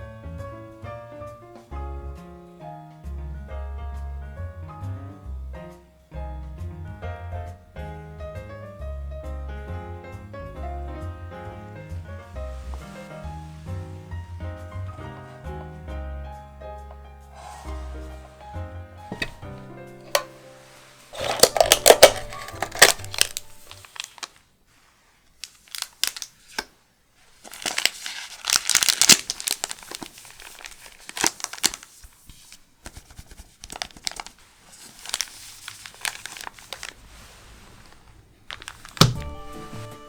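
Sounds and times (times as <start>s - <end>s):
foil wrapper crinkling and tearing: 20.1s - 24.6s, 25.3s - 40.0s.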